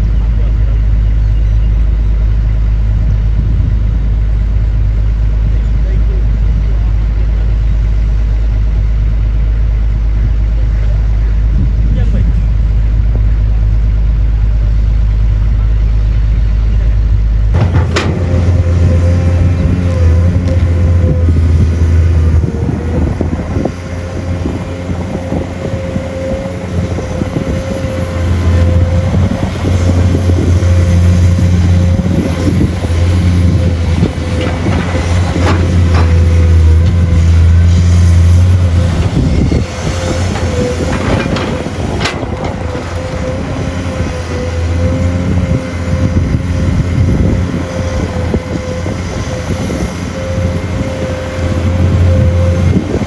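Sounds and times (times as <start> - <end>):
excavator engine under load: 17.3 - 53.0.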